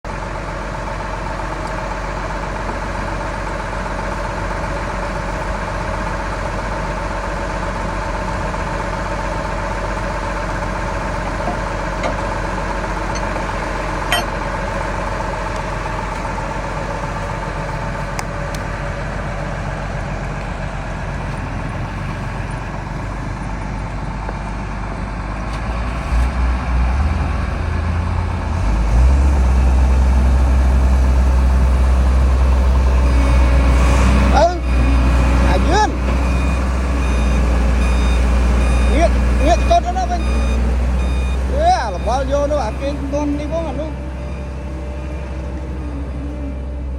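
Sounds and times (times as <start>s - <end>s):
heavy vehicle engine idling: 0.1s - 46.9s
deep rumble: 5.2s - 33.0s.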